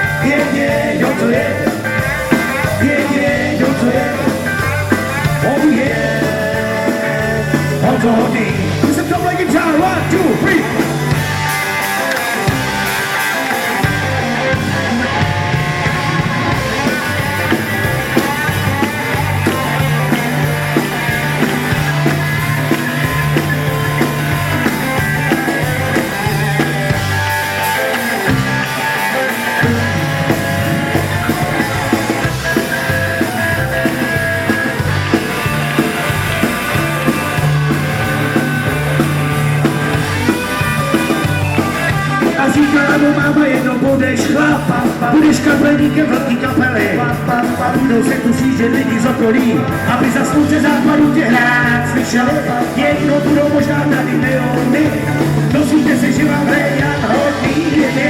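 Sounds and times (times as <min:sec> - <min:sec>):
low bass line: 0:00.0 - 0:11.9, 0:13.8 - 0:58.0
guitar solo: 0:00.0 - 0:44.8
live rock band playing: 0:00.0 - 0:58.0.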